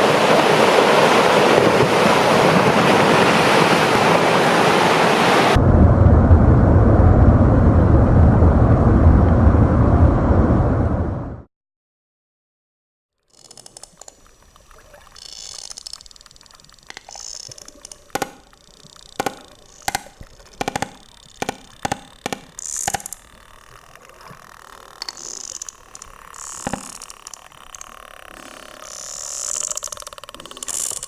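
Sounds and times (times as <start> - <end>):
sharp underwater clicks: 13.3 - 31.0.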